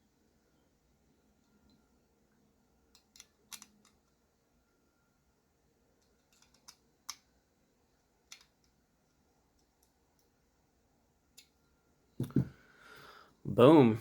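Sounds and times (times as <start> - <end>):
metal knife parts clicking: 3.0 - 4.0, 6.1 - 7.2.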